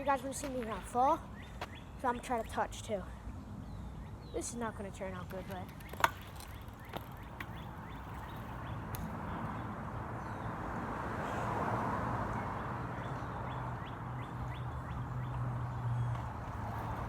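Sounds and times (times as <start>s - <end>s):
bike tyres rolling on pavement: 4.7s - 17.0s.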